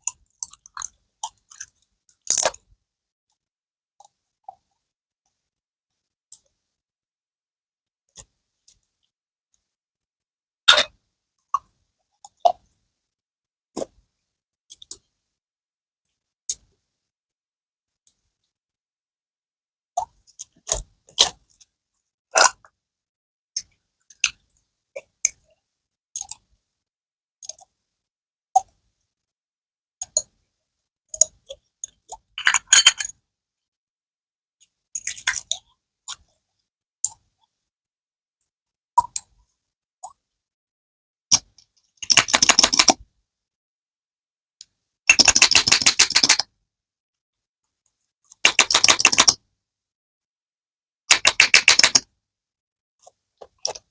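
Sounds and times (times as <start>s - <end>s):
slime squishing with clicks and pops: 0.0s - 2.7s, 20.0s - 21.7s, 35.0s - 36.3s, 41.3s - 43.0s, 48.3s - 49.4s.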